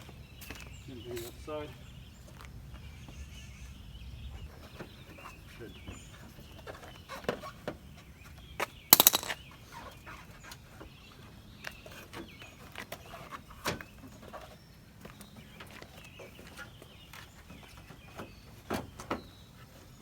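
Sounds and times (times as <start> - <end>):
clicks and knocks of hand work: 9.0 - 9.4
rapid rattle of clicks: 9.0 - 9.4.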